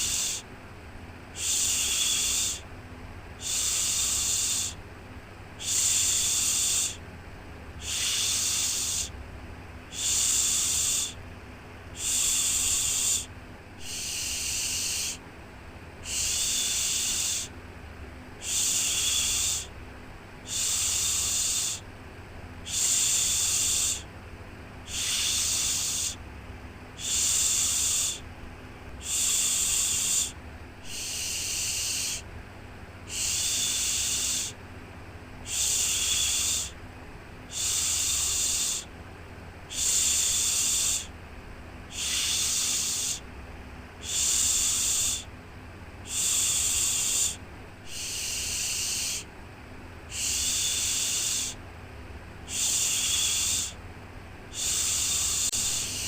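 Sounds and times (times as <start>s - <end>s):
white noise hiss: 0.0s - 56.0s
person shushing: 1.4s - 2.6s, 12.0s - 15.2s, 16.0s - 17.5s, 24.9s - 26.2s, 29.0s - 32.2s, 33.1s - 34.6s, 35.4s - 36.8s, 39.7s - 41.1s, 41.9s - 43.2s, 46.1s - 49.3s, 50.1s - 51.6s, 52.5s - 53.8s, 54.5s - 56.0s.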